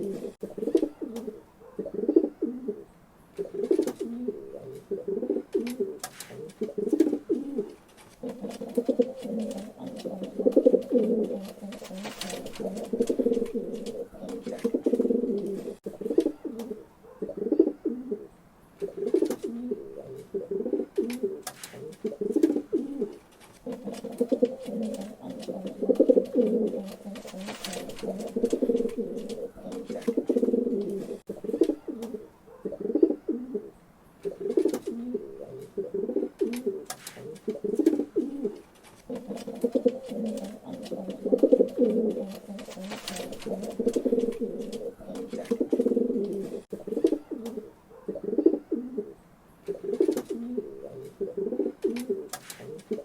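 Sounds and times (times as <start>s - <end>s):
pigeons cooing: 0.0s - 53.0s.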